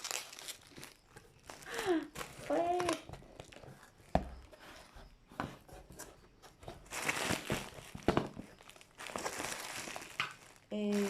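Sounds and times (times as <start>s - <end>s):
plastic wrap crinkling: 0.0s - 4.4s, 6.7s - 11.0s.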